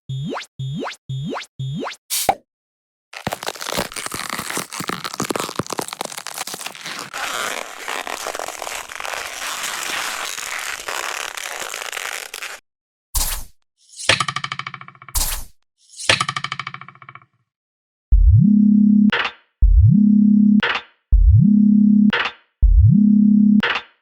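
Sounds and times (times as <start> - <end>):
dense crackling and crunching: 3.2 - 12.6.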